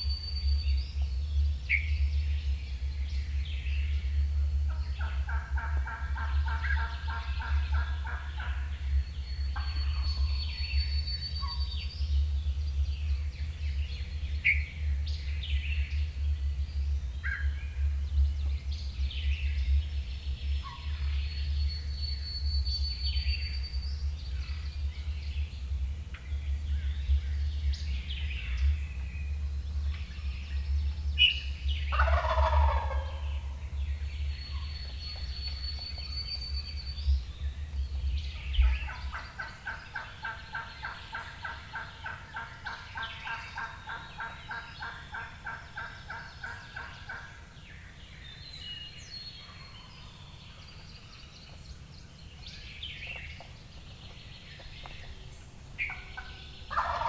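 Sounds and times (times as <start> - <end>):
low wind rumble: 0.0 - 57.0
songbirds chirping: 0.0 - 57.0
turkey gobbling: 4.7 - 8.6, 31.9 - 33.6, 38.6 - 47.4, 55.8 - 57.0
repeated turkey calls: 4.7 - 8.8, 31.9 - 33.7, 38.6 - 47.5, 55.8 - 57.0.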